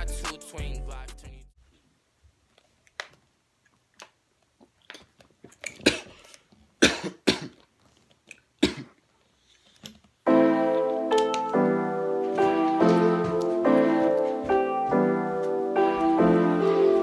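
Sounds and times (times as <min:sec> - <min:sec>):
music: 0:00.0 - 0:01.6, 0:10.3 - 0:17.0
person coughing: 0:05.8 - 0:07.6, 0:08.6 - 0:09.0.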